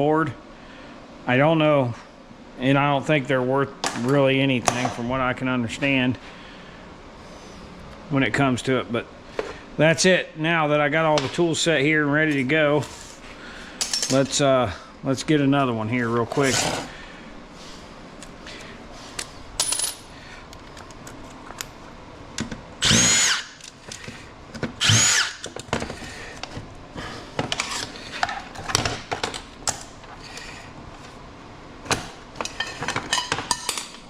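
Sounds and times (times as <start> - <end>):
cordless drill whining: 22.8 - 23.6, 24.8 - 25.5.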